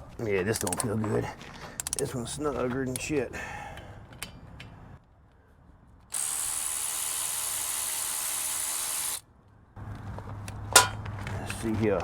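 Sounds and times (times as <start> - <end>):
power ratchet spinning: 6.1 - 9.2.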